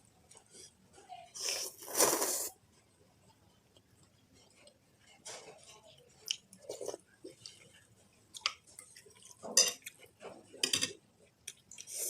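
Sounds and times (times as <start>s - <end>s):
utensils clinking against a bowl: 8.5s - 11.0s.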